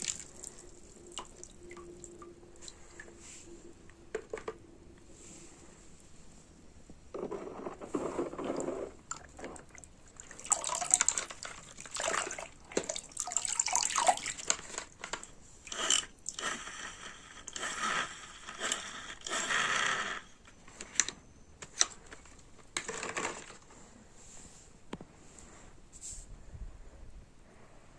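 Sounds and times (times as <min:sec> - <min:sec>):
water splashing and trickling: 0:00.0 - 0:03.2, 0:09.1 - 0:14.7.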